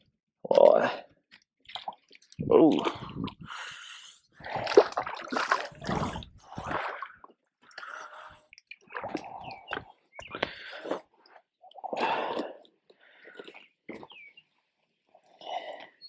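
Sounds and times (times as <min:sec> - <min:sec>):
water splashing and dripping: 0:00.6 - 0:03.7, 0:04.4 - 0:13.6
heavy breathing: 0:02.8 - 0:04.8.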